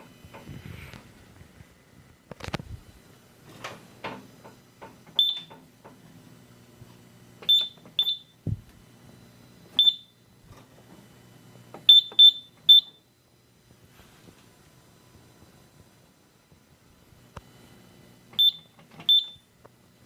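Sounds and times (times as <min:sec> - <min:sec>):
low thump: 0:08.4 - 0:08.7.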